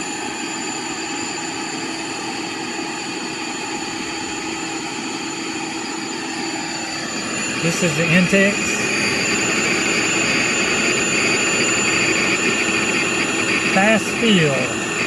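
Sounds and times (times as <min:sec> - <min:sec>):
electric air pump humming: 0:03.6 - 0:15.0
high whine: 0:06.6 - 0:15.0.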